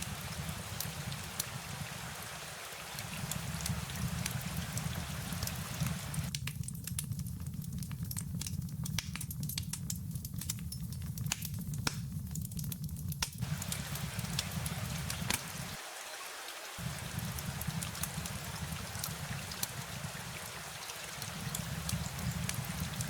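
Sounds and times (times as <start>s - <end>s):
rain hiss: 0.0s - 6.4s, 13.4s - 23.0s
wood fire crackling: 0.0s - 15.8s, 16.6s - 23.0s
steady low rumble: 16.8s - 20.2s.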